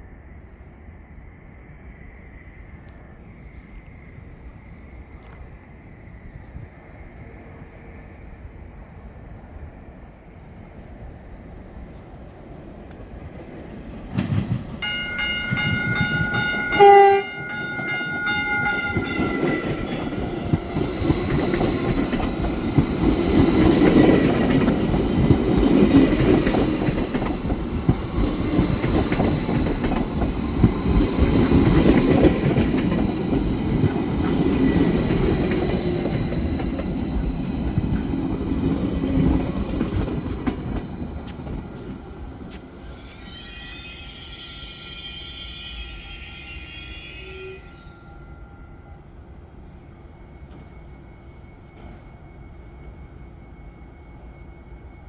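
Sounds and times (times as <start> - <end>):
train rumble: 0.0 - 47.6
thin high whine: 15.1 - 49.1
train horn chord: 16.0 - 20.5.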